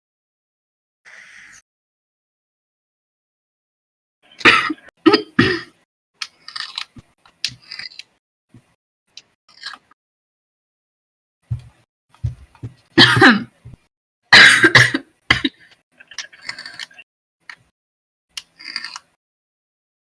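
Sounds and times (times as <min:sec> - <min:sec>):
chesty cough: 0:04.4 - 0:05.7, 0:13.0 - 0:13.5, 0:14.4 - 0:15.6
woman clearing her throat: 0:04.5 - 0:05.7, 0:13.0 - 0:13.5, 0:14.4 - 0:15.6.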